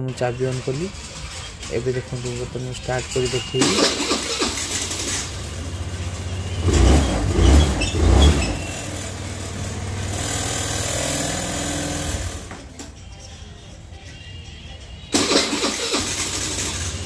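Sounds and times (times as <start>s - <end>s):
scooter engine revving: 0.0s - 12.9s, 15.1s - 17.0s.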